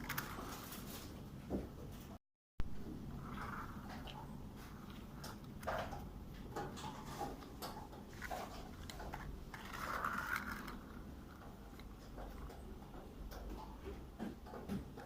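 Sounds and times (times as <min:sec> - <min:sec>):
plastic toy clicking and rattling: 0:00.0 - 0:00.6, 0:04.8 - 0:12.6.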